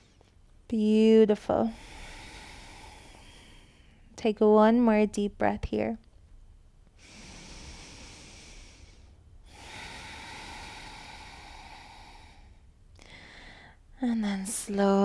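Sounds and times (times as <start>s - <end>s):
person breathing deeply: 1.7s - 4.1s, 7.0s - 13.9s.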